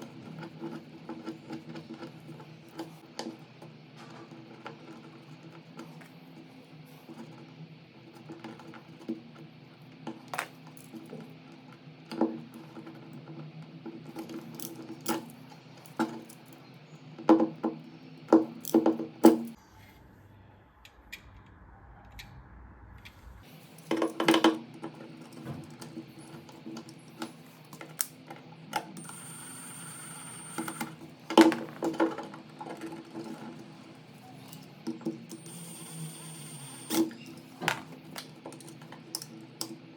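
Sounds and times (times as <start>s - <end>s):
steady low hum: 19.5s - 36.3s.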